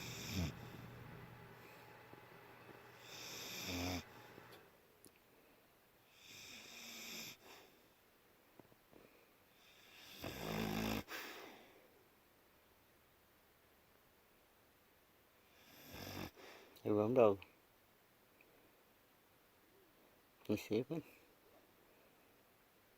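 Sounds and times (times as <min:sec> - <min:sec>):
dog snoring: 0:00.0 - 0:01.8, 0:02.9 - 0:04.6, 0:06.1 - 0:07.6, 0:09.6 - 0:11.2, 0:15.5 - 0:16.4.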